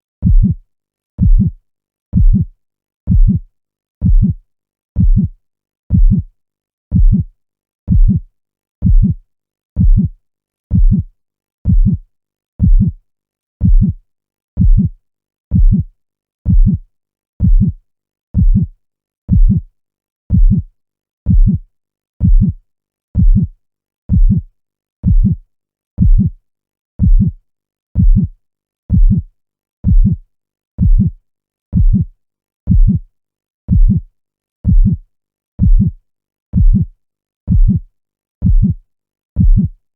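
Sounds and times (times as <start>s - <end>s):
heartbeat thumps: 0.2s - 0.6s, 1.2s - 1.6s, 2.2s - 2.5s, 3.1s - 3.4s, 4.0s - 4.4s, 5.0s - 5.3s, 5.9s - 6.3s, 6.9s - 7.3s, 7.9s - 8.2s, 8.8s - 9.2s, 9.8s - 10.1s, 10.7s - 11.1s, 11.7s - 12.0s, 12.6s - 13.0s, 13.6s - 13.9s, 14.6s - 14.9s, 15.5s - 15.9s, 16.5s - 16.8s, 17.4s - 17.8s, 18.4s - 18.7s, 19.3s - 19.6s, 20.3s - 20.6s, 21.3s - 21.6s, 22.2s - 22.6s, 23.2s - 23.5s, 24.1s - 24.4s, 25.0s - 25.4s, 26.0s - 26.3s, 27.0s - 27.4s, 28.0s - 28.3s, 28.9s - 29.2s, 29.8s - 30.2s, 30.8s - 31.1s, 31.8s - 32.1s, 32.7s - 33.0s, 33.7s - 34.0s, 34.7s - 35.0s, 35.6s - 36.0s, 36.6s - 36.9s, 37.5s - 37.8s, 38.4s - 38.8s, 39.4s - 39.7s.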